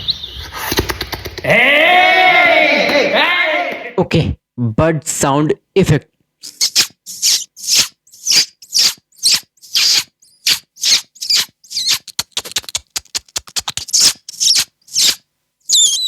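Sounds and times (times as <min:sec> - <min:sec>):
beatboxed bird chirps: 0:06.4 - 0:16.0.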